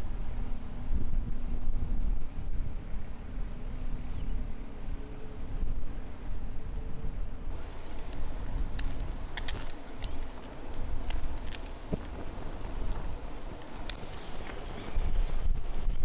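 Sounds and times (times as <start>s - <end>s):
wind rumble on microphone: 0.0s - 16.0s
campfire crackling: 7.5s - 16.0s
sharp pops of burning wood: 7.5s - 16.0s.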